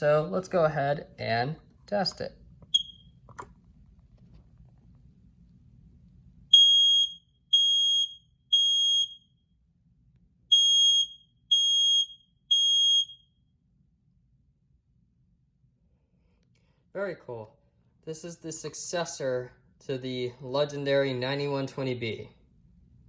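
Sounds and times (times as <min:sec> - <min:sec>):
smoke alarm beeping: 0:02.7 - 0:03.2, 0:06.5 - 0:09.3, 0:10.5 - 0:13.4.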